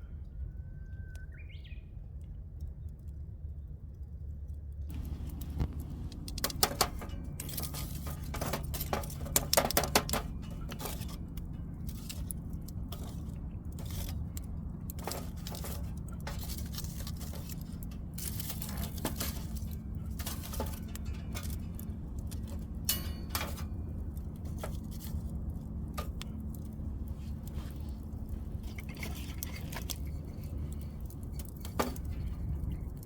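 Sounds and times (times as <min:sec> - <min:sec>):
steady low hum: 0:02.4 - 0:33.0
small metal objects clinking: 0:06.5 - 0:25.3.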